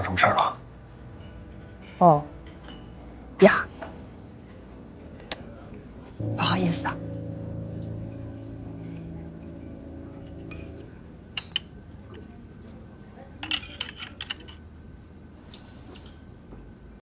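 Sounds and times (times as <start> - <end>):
sustained musical chord: 6.2 - 15.4
clinks: 10.2 - 14.8.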